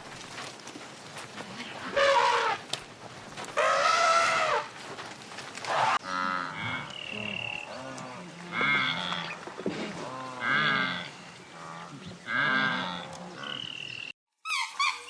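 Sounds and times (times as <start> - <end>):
cattle mooing: 1.4 - 2.7, 3.5 - 4.7, 5.7 - 6.9, 10.0 - 13.6
animals calling in wavering cries: 1.5 - 2.7, 3.5 - 4.7.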